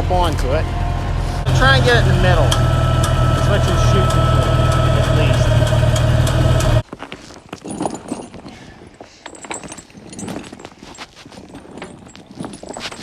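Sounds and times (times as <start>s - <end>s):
steel chain clinking: 7.4s - 13.0s.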